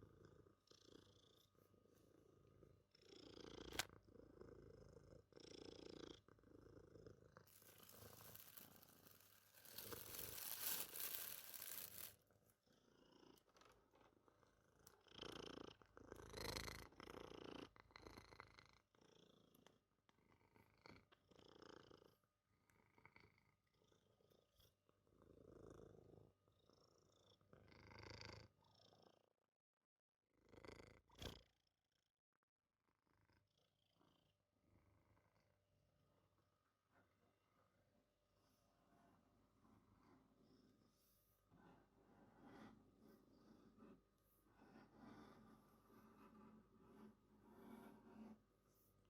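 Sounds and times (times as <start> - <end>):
cat purring softly: 0.0 - 29.4, 30.4 - 31.5, 32.8 - 49.0.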